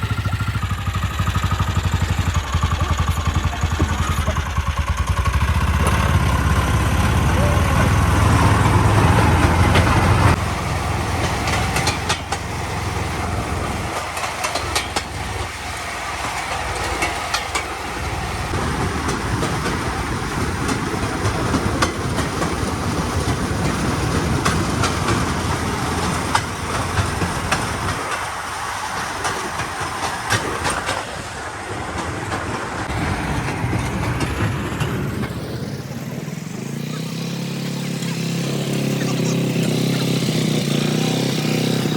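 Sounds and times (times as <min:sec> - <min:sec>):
moving vehicle running noise: 0:00.0 - 0:41.9
rattling clicks: 0:13.9 - 0:15.5.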